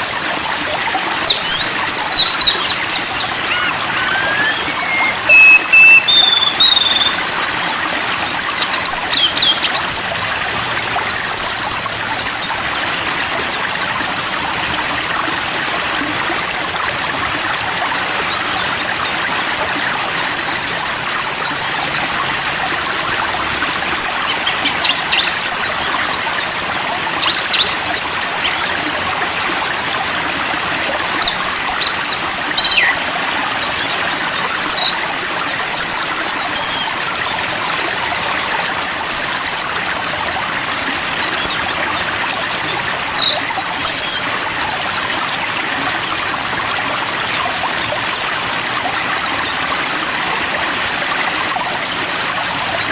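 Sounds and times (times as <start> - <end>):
running water: 0.0 - 52.9
songbird phrases: 1.2 - 7.2.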